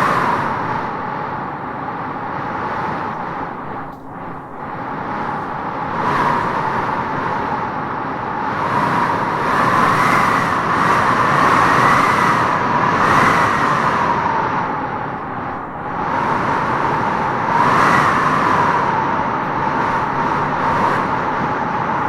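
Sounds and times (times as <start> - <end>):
wind howling through trees: 0.0 - 22.0.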